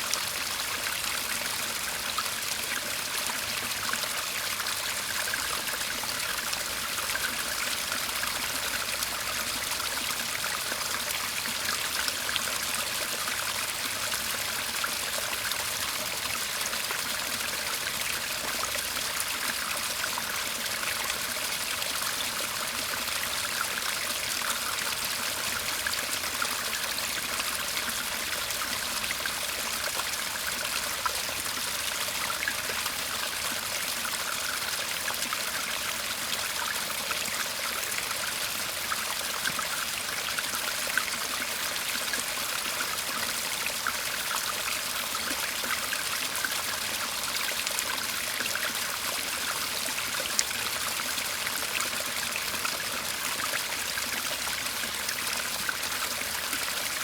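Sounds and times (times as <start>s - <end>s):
garden stream trickling: 0.0s - 57.0s.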